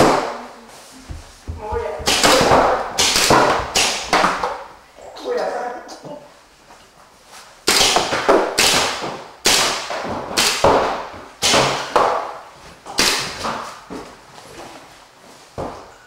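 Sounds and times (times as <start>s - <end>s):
paintball markers popping with echo: 2.0s - 4.7s.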